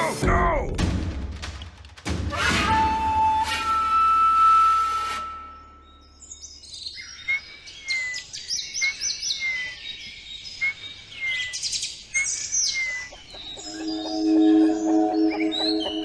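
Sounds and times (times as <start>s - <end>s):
birds chirping: 5.7s - 16.0s.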